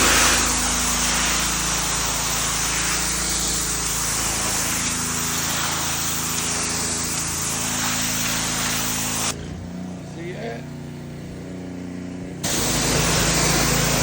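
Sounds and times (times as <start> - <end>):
high-pressure water spray hiss: 0.0 - 9.4, 12.4 - 14.0
pressure washer engine drone: 0.0 - 14.0.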